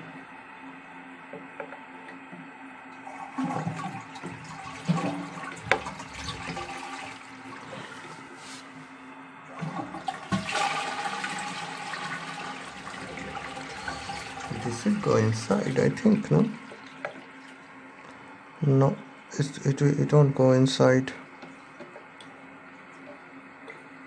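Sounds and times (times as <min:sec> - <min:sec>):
toilet flushing: 0:02.9 - 0:08.8, 0:09.4 - 0:17.9.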